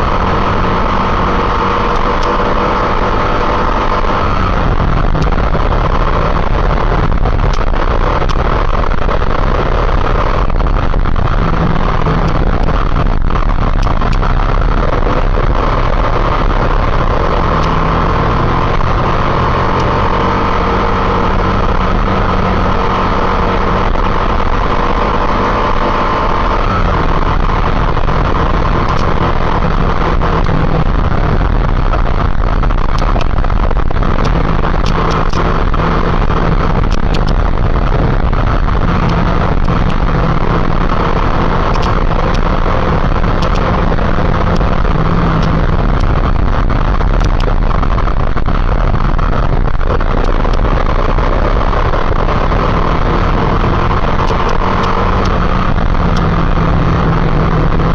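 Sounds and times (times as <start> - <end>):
motorcycle engine running: 0.0 - 57.9
wind rushing on microphone: 0.0 - 57.9.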